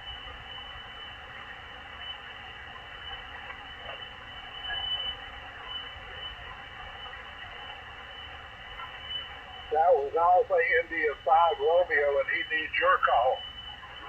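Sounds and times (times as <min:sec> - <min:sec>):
radio static hiss: 0:09.3 - 0:14.0.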